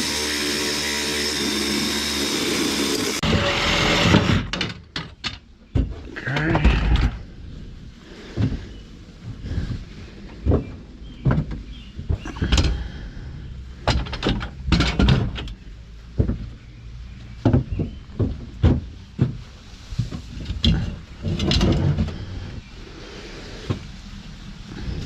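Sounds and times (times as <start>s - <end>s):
scrap metal clanking and thumping: 13.8s - 15.6s, 17.4s - 22.5s.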